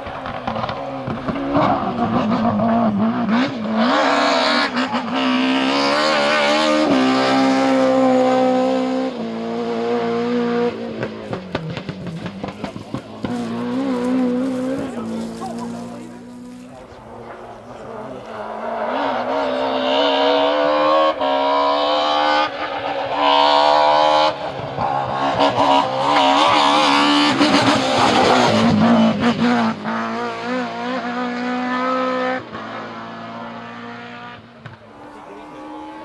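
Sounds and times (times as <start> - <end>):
car engine revving: 0.0 - 36.0
gear shifts: 11.0 - 18.6.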